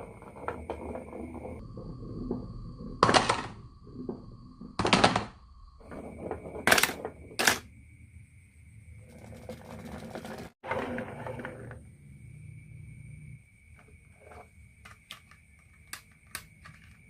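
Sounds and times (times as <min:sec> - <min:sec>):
marbles rolling on wooden run: 0:00.0 - 0:07.7, 0:09.0 - 0:11.9.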